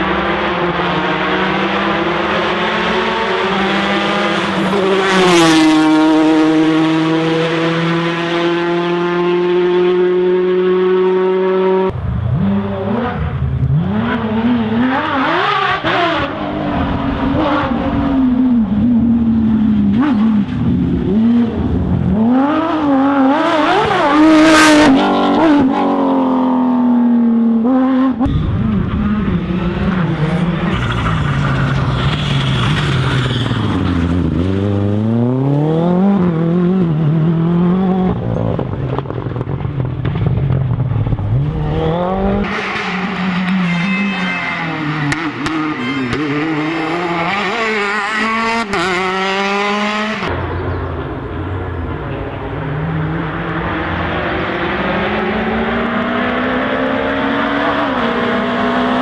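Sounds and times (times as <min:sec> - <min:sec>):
rally car engines revving: 0:00.0 - 0:59.0.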